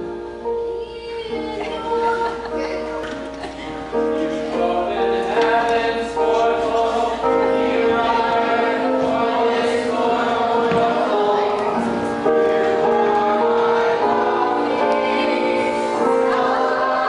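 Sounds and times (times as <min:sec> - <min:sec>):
orchestra and choir ballad: 0:00.0 - 0:17.0.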